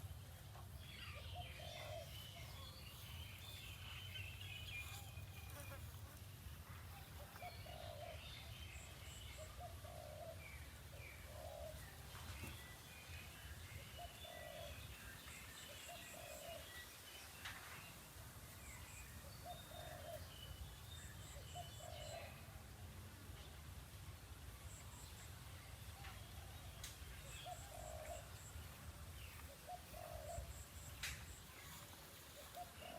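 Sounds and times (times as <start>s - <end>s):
small birds chirping: 0.0s - 10.3s
dove cooing: 1.3s - 2.2s, 7.2s - 8.5s, 9.4s - 12.0s, 14.0s - 14.8s, 16.0s - 16.6s, 19.4s - 20.2s, 27.4s - 28.4s, 29.4s - 30.6s, 31.6s - 32.9s.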